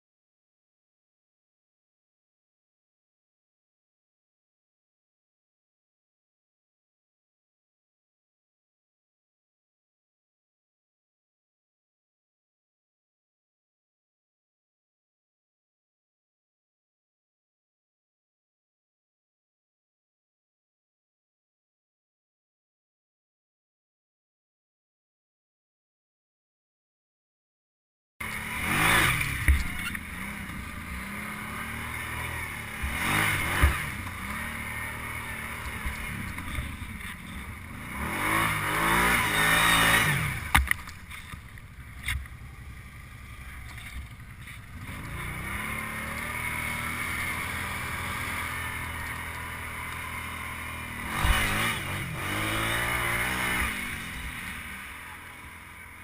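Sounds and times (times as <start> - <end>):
atv engine revving: 28.2 - 56.0.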